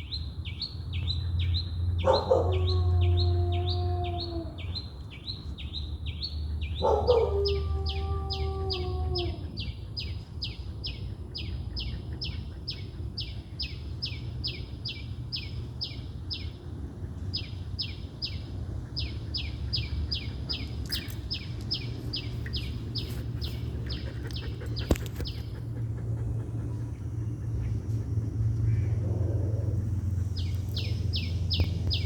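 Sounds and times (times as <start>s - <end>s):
bird chirping: 17.3s - 25.6s, 30.1s - 32.0s.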